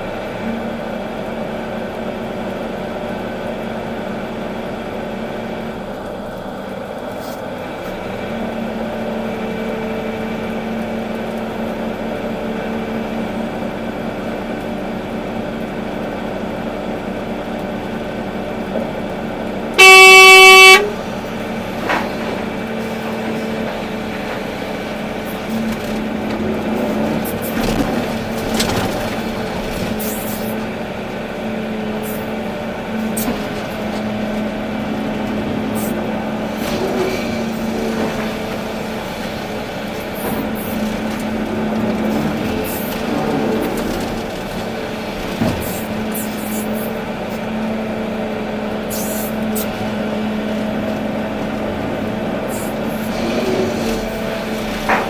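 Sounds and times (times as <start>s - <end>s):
excavator diesel engine running: 0.0s - 55.0s
horn blast: 19.8s - 21.0s.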